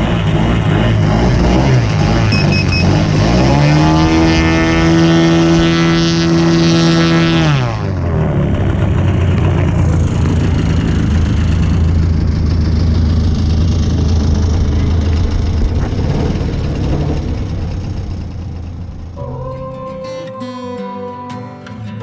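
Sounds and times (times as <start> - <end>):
noisy whirr: 0.0 - 19.5
small engine running: 0.0 - 19.6.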